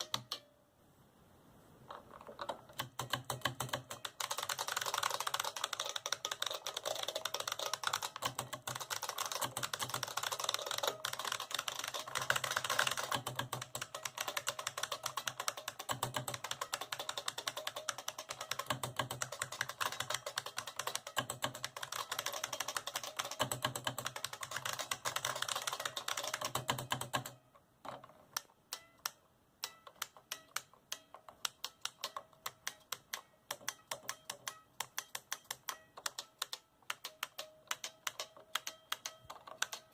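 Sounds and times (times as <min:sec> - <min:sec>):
fast typing on keyboard: 0:02.7 - 0:27.4, 0:31.5 - 0:39.9.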